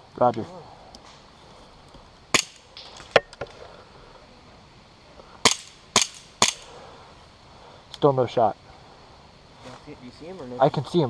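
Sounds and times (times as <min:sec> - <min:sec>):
airsoft guns firing: 0:02.3 - 0:03.2, 0:05.4 - 0:06.8.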